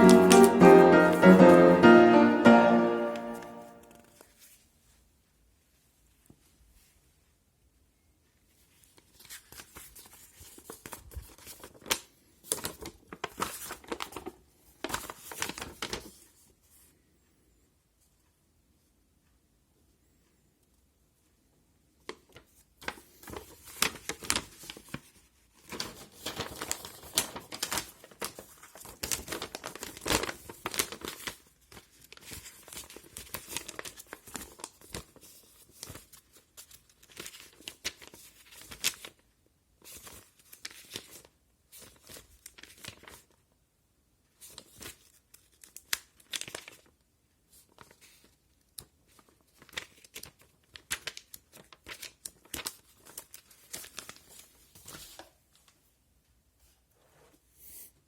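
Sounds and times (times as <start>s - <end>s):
packaging crinkling and tearing: 25.7s - 31.4s, 32.0s - 35.2s, 44.9s - 46.9s, 49.6s - 55.2s.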